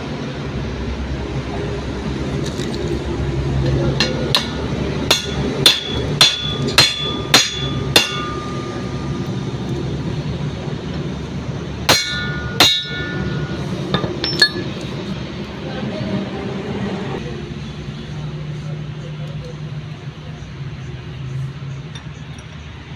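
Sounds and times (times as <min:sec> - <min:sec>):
hammer striking metal: 0:03.9 - 0:09.5, 0:11.7 - 0:14.9.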